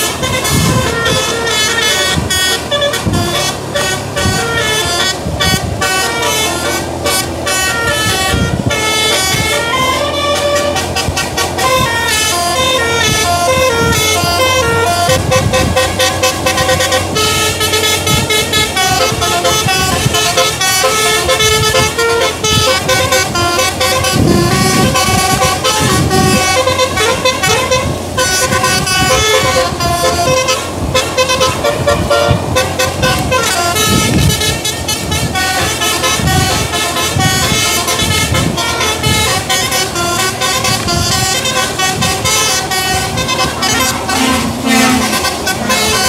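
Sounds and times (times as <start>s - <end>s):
deep rumbles: 0.0s - 46.0s
musical bus air horn: 0.0s - 46.0s.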